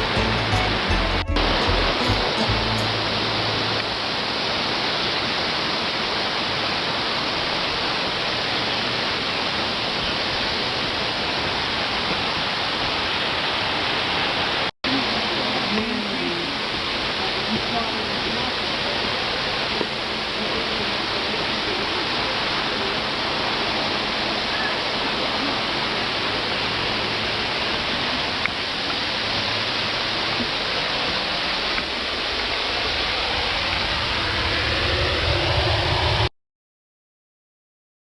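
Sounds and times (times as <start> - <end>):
low rumble: 0.0 - 4.4, 33.2 - 36.3
waterfall rushing: 0.0 - 36.2.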